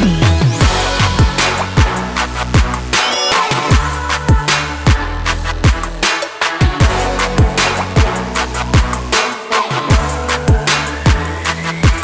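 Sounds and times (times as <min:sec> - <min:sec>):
electronic music with steady beat: 0:00.0 - 0:12.0.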